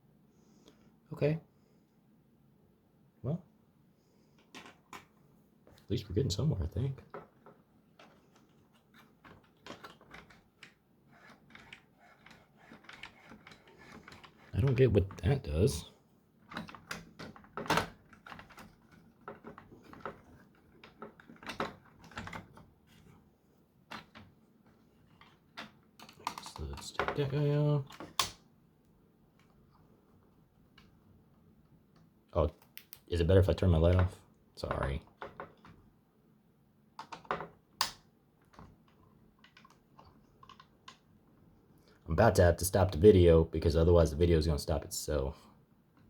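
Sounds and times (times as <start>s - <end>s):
plastic toy gun clicking and clattering: 7.2s - 14.8s, 27.9s - 28.4s, 37.0s - 41.1s.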